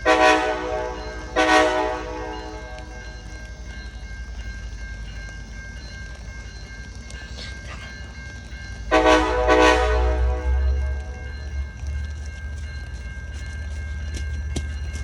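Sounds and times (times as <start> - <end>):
train horn blasts: 0.0 - 3.1, 8.9 - 11.3
train rumble: 0.0 - 15.0.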